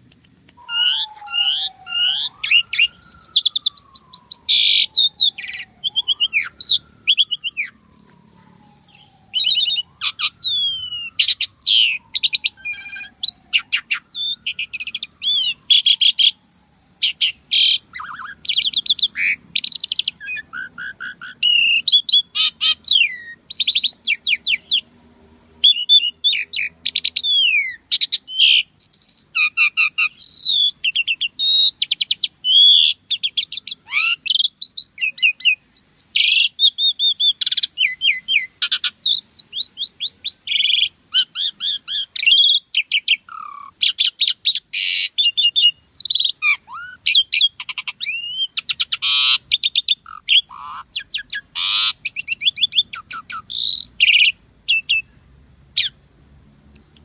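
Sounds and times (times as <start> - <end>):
starling singing: 0.0 - 55.1, 55.8 - 56.0, 56.8 - 57.0.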